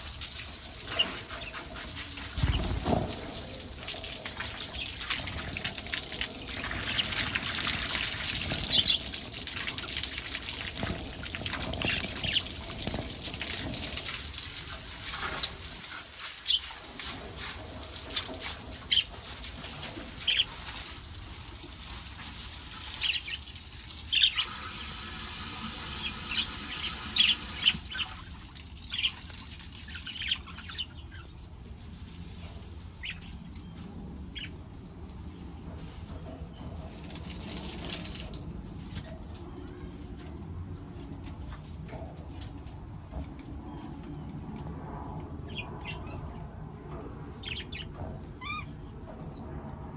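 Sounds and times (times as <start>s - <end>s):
running water hissing: 0.0s - 28.1s
small parrots chirping: 47.4s - 48.7s.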